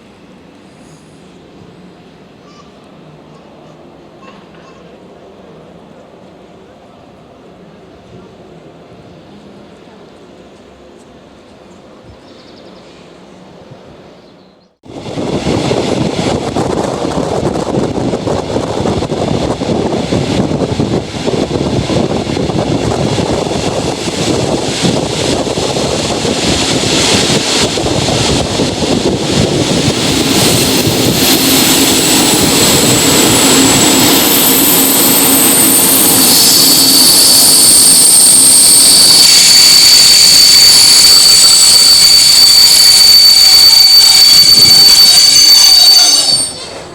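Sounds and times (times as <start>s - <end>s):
train rushing noise: 14.8s - 46.9s
brake squeal: 30.0s - 46.9s.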